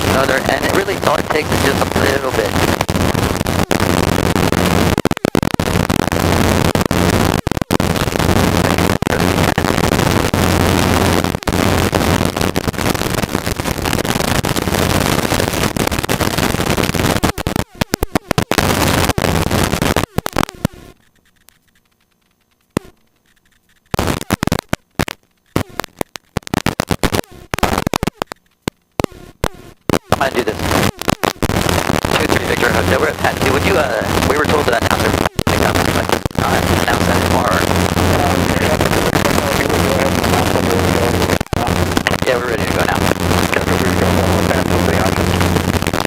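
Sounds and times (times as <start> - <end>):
helicopter cockpit noise: 0.0 - 15.7, 30.0 - 46.0.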